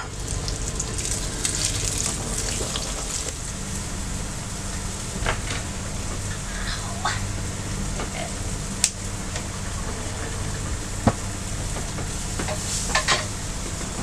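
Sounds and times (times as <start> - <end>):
food sizzling in a frying pan: 0.0 - 5.0, 12.1 - 13.6
steady low hum: 0.0 - 14.0.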